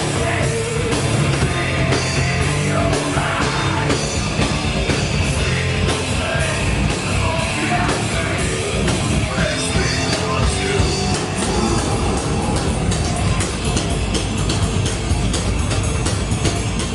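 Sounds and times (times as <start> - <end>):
heavy metal band playing: 0.0 - 16.9
singer yelling: 9.3 - 13.0.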